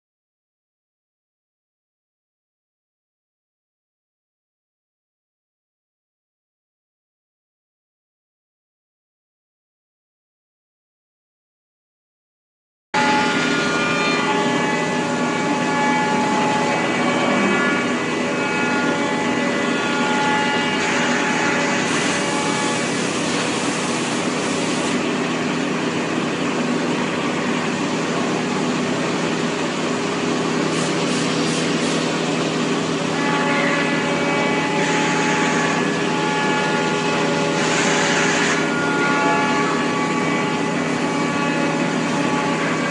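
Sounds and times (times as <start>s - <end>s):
machine whining tones: 13.0s - 42.8s.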